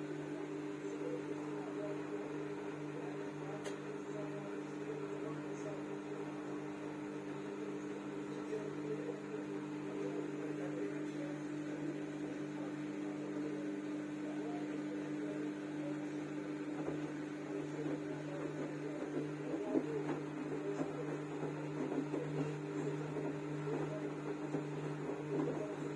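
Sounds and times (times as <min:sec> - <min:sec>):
washing machine humming: 0:00.0 - 0:25.9.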